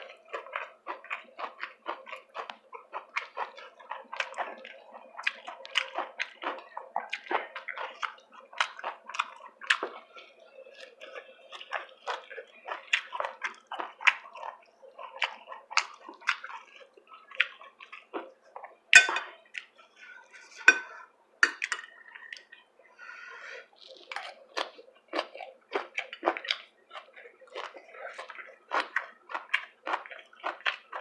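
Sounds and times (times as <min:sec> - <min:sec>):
chewing and mouth smacks: 0:00.0 - 0:20.7, 0:21.4 - 0:22.7, 0:23.6 - 0:31.0
cutlery clinking on dish: 0:19.0 - 0:19.3, 0:20.6 - 0:21.9
tableware clattering: 0:19.0 - 0:19.3, 0:20.6 - 0:21.9.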